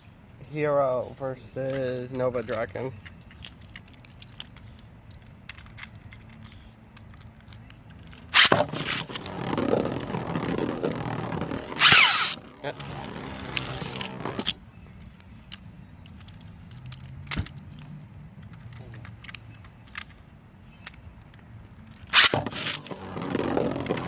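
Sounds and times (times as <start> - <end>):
plastic toy tops clicking: 2.4 - 20.2.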